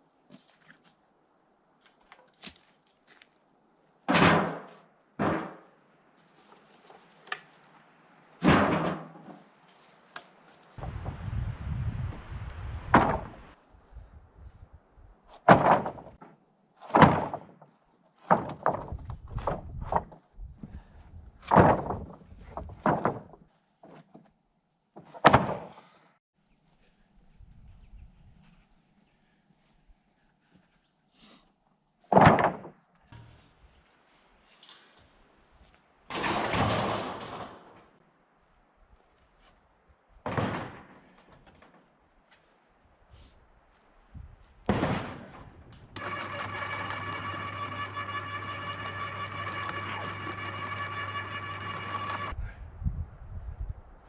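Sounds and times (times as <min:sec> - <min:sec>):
wooden boards thunking onto pile: 0:08.4 - 0:09.4, 0:12.9 - 0:13.4, 0:15.4 - 0:20.2, 0:21.4 - 0:23.4, 0:32.1 - 0:32.8
heavy wooden thuds: 0:12.8 - 0:13.6, 0:15.4 - 0:16.3, 0:16.9 - 0:17.6, 0:18.3 - 0:23.4.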